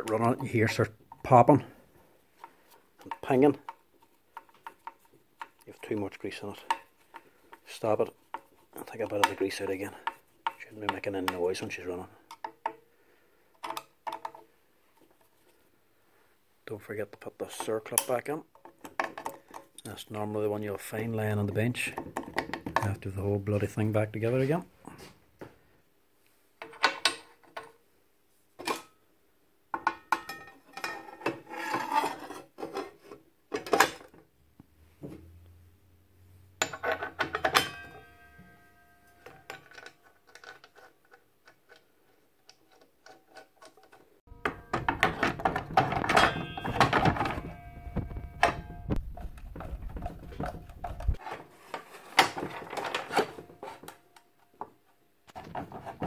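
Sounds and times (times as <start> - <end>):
metal parts clinking and knocking: 36.6 - 41.9, 42.5 - 53.9
continuous metal clatter: 42.6 - 53.9.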